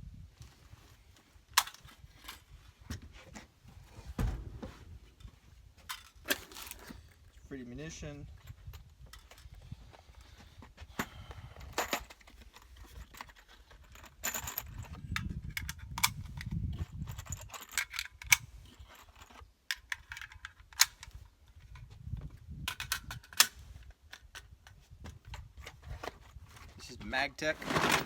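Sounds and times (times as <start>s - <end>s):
metallic clicks and rustling: 11.8s - 21.8s, 27.4s - 28.0s.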